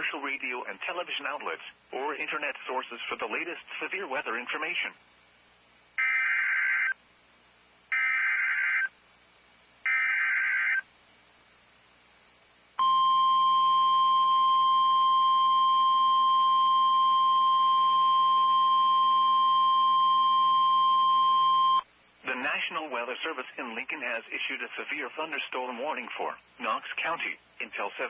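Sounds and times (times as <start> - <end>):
harsh digital data bursts: 6.0 - 7.0, 7.9 - 8.9
steady warning alarm tone: 6.0 - 7.0, 7.9 - 8.9, 9.9 - 10.8, 12.8 - 21.8.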